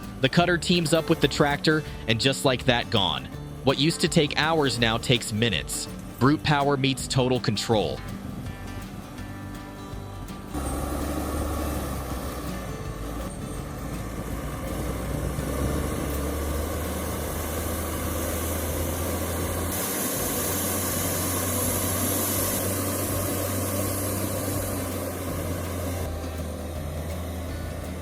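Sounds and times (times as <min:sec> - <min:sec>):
tractor engine humming: 0:00.0 - 0:28.0
high hiss: 0:14.0 - 0:28.0.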